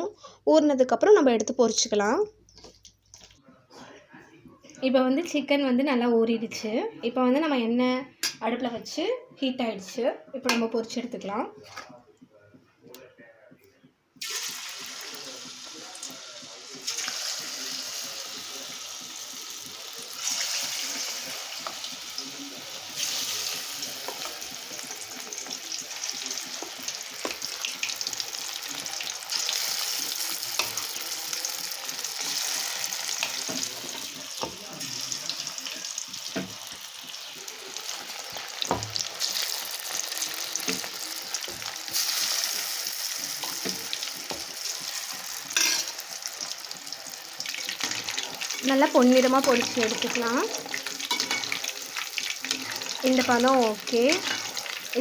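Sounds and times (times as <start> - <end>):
chicken deep-frying in oil: 14.2 - 55.0.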